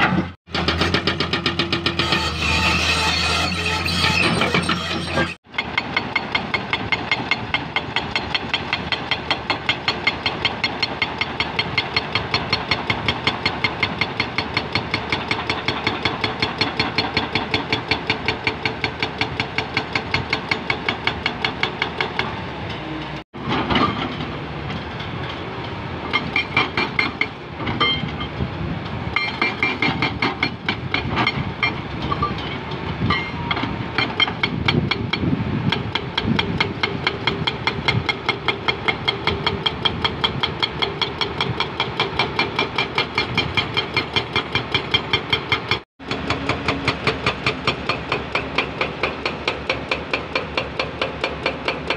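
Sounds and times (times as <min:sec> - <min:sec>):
short high squeals: 0:02.0 - 0:05.4
excavator engine running: 0:35.8 - 0:51.9.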